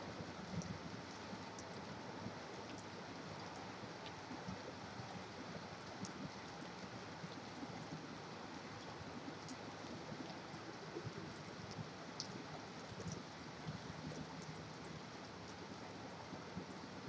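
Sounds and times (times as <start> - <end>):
steady rain: 0.0 - 17.0.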